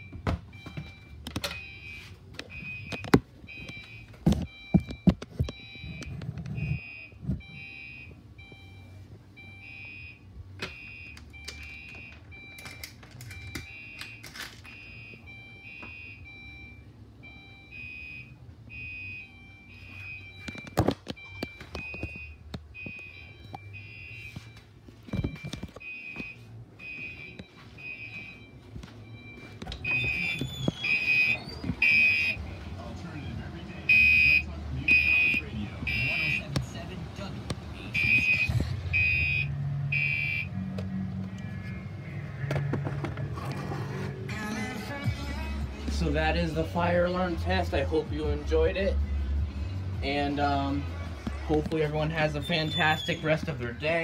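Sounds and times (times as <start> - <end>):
fire alarm chime tone pulsing: 0.0 - 32.4, 33.9 - 36.4, 37.9 - 40.6.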